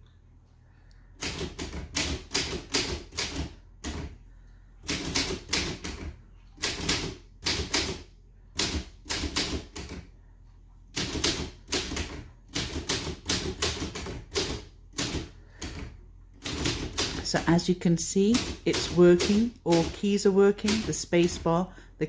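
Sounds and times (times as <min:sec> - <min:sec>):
manual typewriter key strikes: 0:18.3 - 0:21.4.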